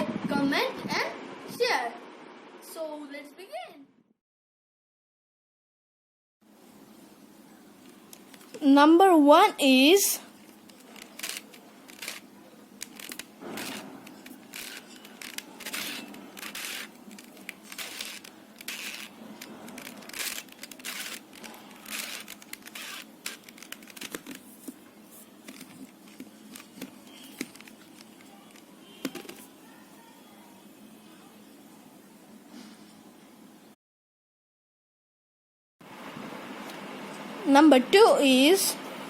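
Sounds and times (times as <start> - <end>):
puzzle cube turning clicks: 10.6 - 24.8, 25.5 - 29.4.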